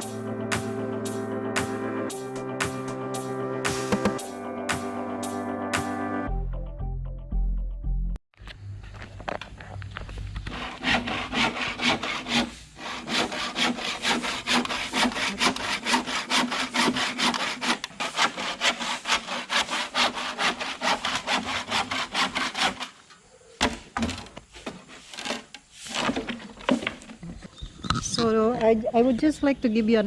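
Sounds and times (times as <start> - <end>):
handsaw cutting bamboo: 10.4 - 23.0.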